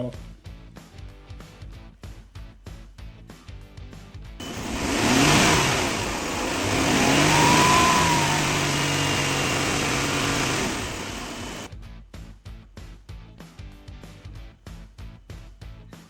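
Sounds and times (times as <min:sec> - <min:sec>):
car engine revving: 0:04.4 - 0:11.7.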